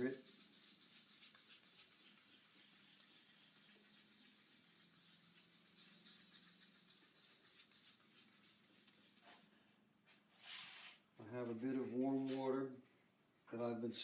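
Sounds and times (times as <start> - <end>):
sandpaper rubbing on lacquer: 0.0 - 9.5.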